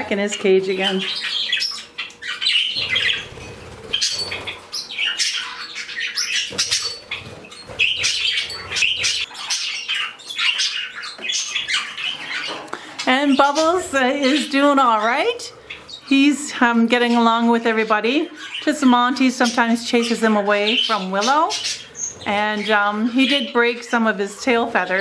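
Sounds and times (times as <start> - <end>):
budgies chirping and chattering: 0.0 - 25.0
wingbeats whirring: 1.2 - 9.4.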